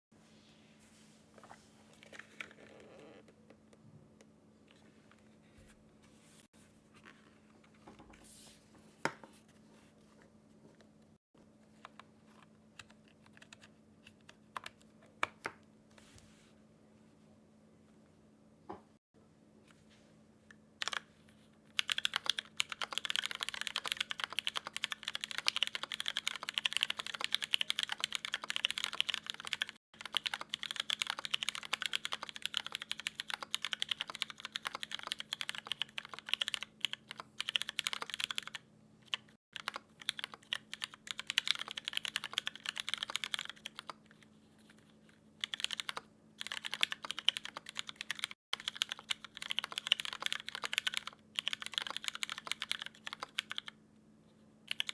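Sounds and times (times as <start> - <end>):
faint steady hum: 0.1 - 54.9
mechanical keyboard typing: 12.8 - 13.7, 20.8 - 21.1, 21.7 - 44.0, 45.4 - 53.8, 54.7 - 54.9.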